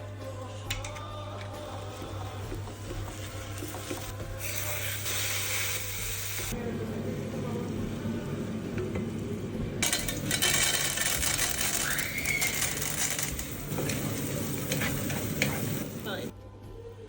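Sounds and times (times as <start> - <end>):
food sizzling in a frying pan: 1.8 - 6.6, 10.0 - 16.3.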